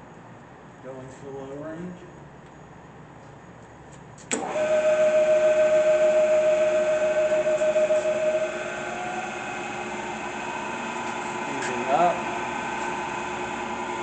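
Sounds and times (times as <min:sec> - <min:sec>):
milling machine whine: 0:04.4 - 0:14.0.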